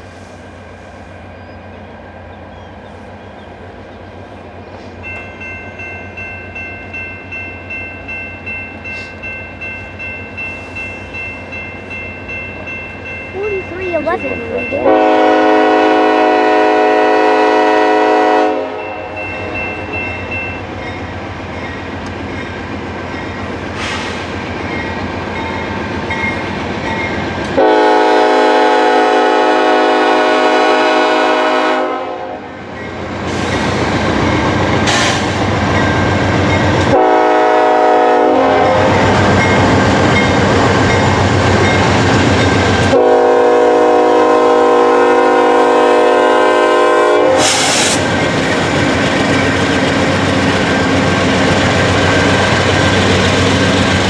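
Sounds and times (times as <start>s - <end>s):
rumble of locomotives and freight cars: 0.0s - 54.0s
locomotive air horn blasts: 14.8s - 19.1s, 27.6s - 32.5s, 36.8s - 39.1s, 42.9s - 48.0s.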